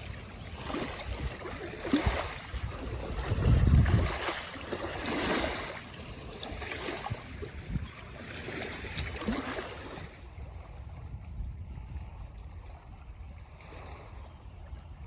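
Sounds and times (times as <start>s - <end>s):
low wind rumble: 0.0s - 9.2s, 10.0s - 15.0s
lake waves lapping at shore: 0.0s - 15.0s.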